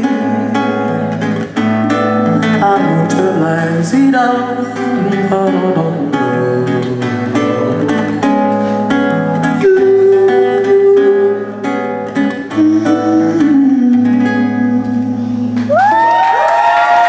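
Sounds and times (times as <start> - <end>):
acoustic guitar strummed: 0.0 - 15.7
whoops and cheering: 15.7 - 17.0.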